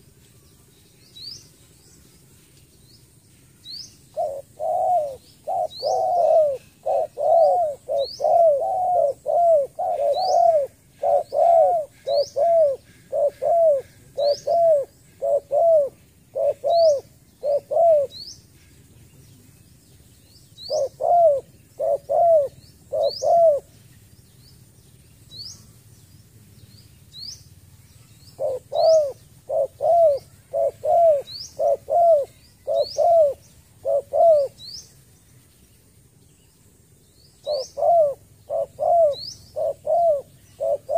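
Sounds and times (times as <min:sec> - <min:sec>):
small bird chirping: 0:00.0 - 0:40.9
dove cooing: 0:04.1 - 0:18.3, 0:20.7 - 0:23.7, 0:28.3 - 0:34.8, 0:37.4 - 0:40.9.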